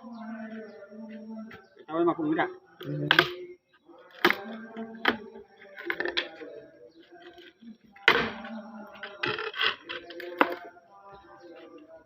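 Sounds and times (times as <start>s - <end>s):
hard objects clicking and knocking: 2.8s - 3.4s, 4.0s - 6.5s, 7.2s - 10.7s.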